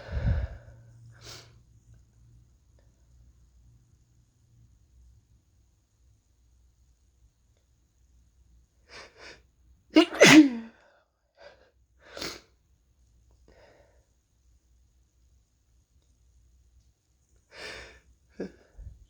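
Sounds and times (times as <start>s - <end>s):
person sneezing: 10.0s - 10.8s.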